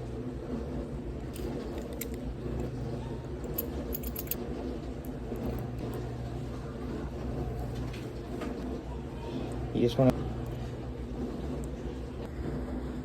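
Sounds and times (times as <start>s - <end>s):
steady low hum: 0.0s - 13.0s
keys and lock parts jingling: 1.4s - 2.7s, 3.4s - 4.4s.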